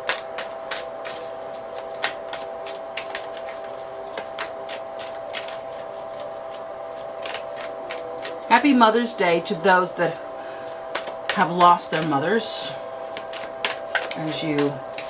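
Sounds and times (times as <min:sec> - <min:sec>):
cards being shuffled: 0:00.0 - 0:08.5, 0:13.0 - 0:15.0
faint steady hum: 0:00.0 - 0:15.0.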